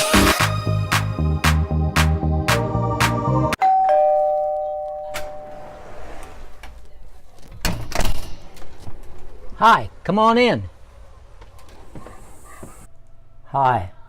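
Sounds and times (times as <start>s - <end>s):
music with a beat: 0.0s - 3.6s
two-tone doorbell chime: 3.6s - 5.8s.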